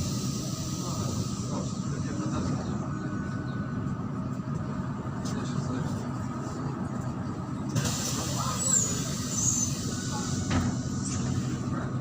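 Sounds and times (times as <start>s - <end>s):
compressed air hiss: 0.0s - 1.6s, 7.8s - 11.5s
bus engine droning: 0.0s - 12.0s.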